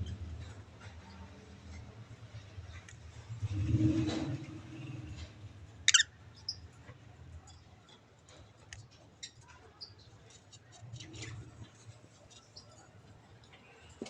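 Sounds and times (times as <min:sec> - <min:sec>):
lovebirds chirping: 0:05.9 - 0:06.6
faint high chirps and clicks: 0:05.9 - 0:06.7.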